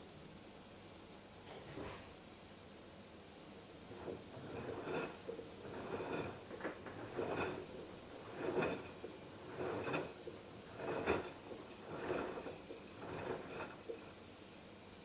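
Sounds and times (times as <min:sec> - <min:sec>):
washing machine drum turning: 0:03.8 - 0:14.2
wet laundry swishing in water: 0:03.8 - 0:14.2.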